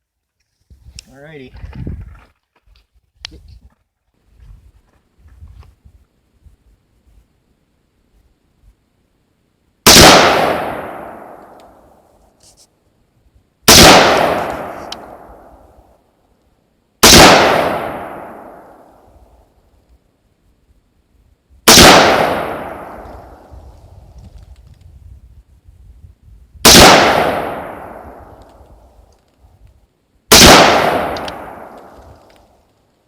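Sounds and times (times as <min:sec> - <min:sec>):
rifle shots with echo: 0:09.9 - 0:12.0, 0:13.7 - 0:15.8, 0:17.0 - 0:19.1, 0:21.7 - 0:23.5, 0:26.6 - 0:28.8, 0:30.3 - 0:32.3.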